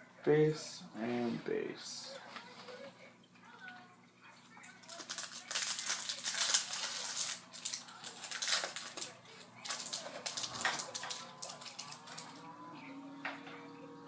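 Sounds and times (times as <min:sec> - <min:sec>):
foil wrappers crinkling: 0:04.6 - 0:12.4.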